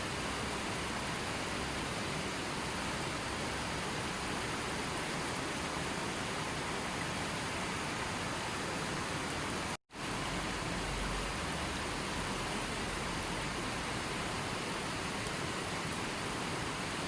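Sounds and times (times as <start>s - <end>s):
rushing water: 0.0s - 17.0s.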